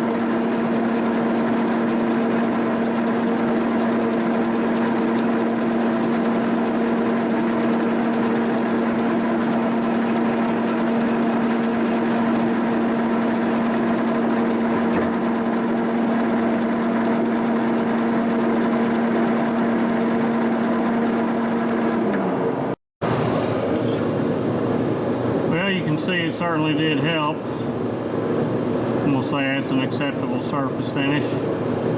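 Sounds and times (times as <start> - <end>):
milling machine hum: 0.0 - 25.5.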